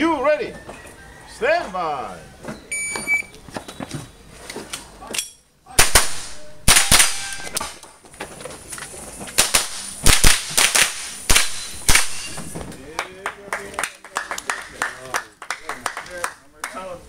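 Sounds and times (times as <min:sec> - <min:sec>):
rifle shots cracking: 0:05.8 - 0:07.8, 0:09.4 - 0:12.4.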